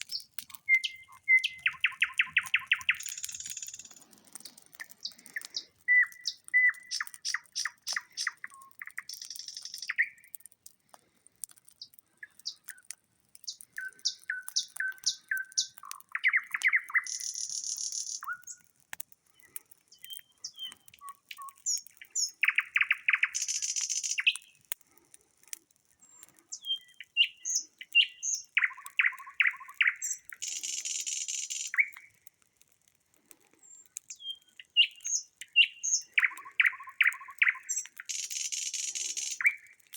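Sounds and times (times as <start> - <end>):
nightingale singing: 0.0 - 4.0, 4.8 - 10.2, 11.8 - 12.8, 13.4 - 18.6, 19.9 - 24.6, 26.5 - 32.1, 33.7 - 39.8.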